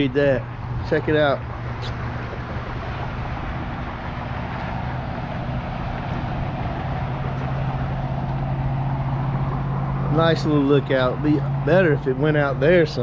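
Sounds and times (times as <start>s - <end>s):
vehicle engine humming: 0.0s - 13.0s.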